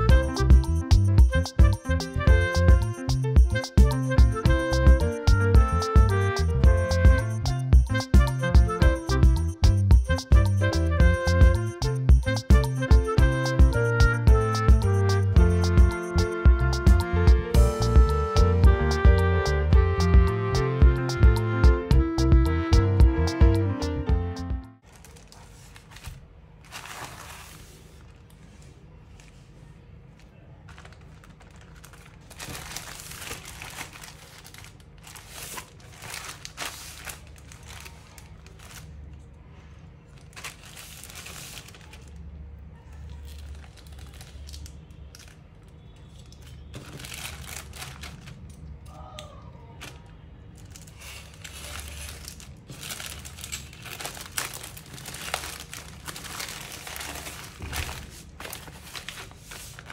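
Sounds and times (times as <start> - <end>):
plastic crinkling and tearing: 24.8 - 29.6, 30.2 - 39.4, 40.1 - 42.4, 43.0 - 48.7, 49.8 - 59.9.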